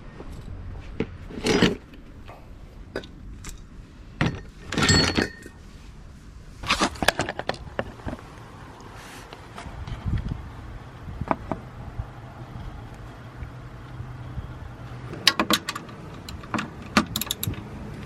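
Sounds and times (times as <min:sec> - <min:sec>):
metallic clinks and clunks: 0:01.3 - 0:05.6, 0:15.2 - 0:17.7.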